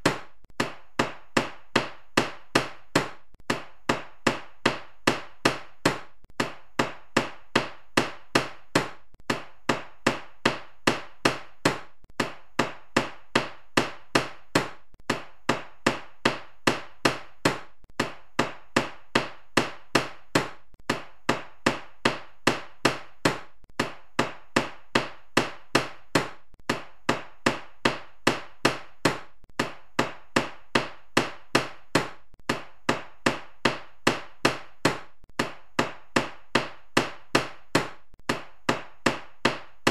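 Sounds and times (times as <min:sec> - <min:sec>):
hammer striking: 0:00.0 - 0:39.9.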